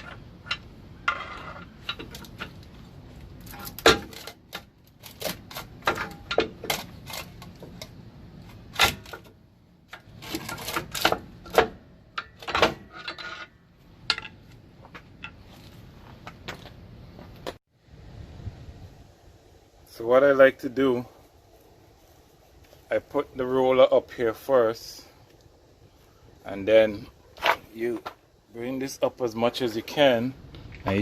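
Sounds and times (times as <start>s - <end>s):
metallic clanks of brake parts: 5.7s - 7.8s, 9.9s - 15.6s.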